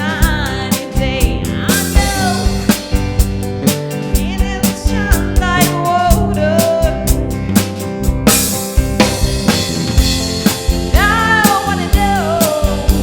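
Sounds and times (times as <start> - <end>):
person singing: 0.0 - 2.8, 4.1 - 7.4, 10.9 - 13.0
rock band playing: 0.0 - 13.0.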